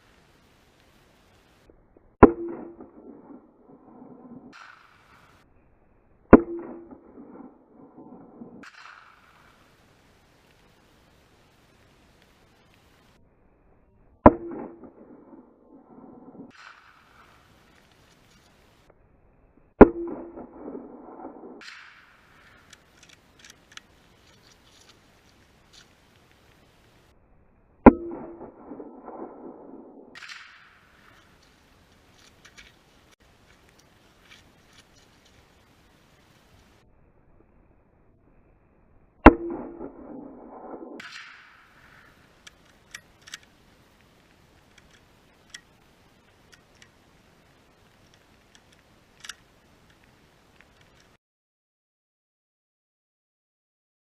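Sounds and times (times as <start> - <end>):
echoing gunshot: 2.2 - 5.4, 6.3 - 9.7, 14.2 - 17.5, 19.8 - 22.7, 27.8 - 31.2, 39.2 - 42.4
faint clicks: 8.6 - 13.2, 21.6 - 27.1, 30.2 - 36.8, 41.0 - 51.2.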